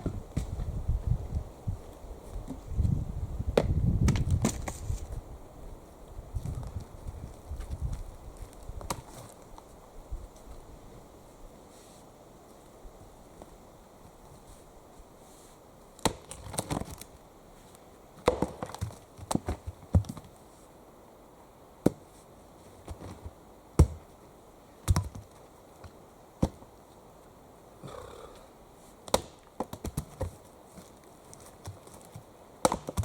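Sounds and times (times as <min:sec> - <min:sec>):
axe chopping wood: 0:16.0 - 0:16.9, 0:18.2 - 0:20.1, 0:23.8 - 0:24.1, 0:29.0 - 0:30.2, 0:32.6 - 0:33.0.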